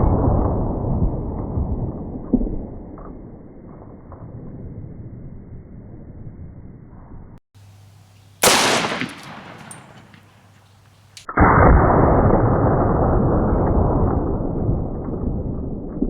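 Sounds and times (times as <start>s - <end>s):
revolver gunshot: 8.4s - 10.6s.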